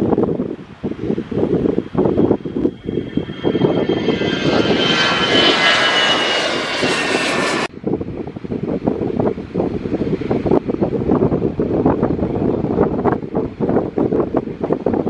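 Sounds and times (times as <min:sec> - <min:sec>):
wind noise on microphone: 0:00.0 - 0:15.0
jet engines whining: 0:01.1 - 0:07.7.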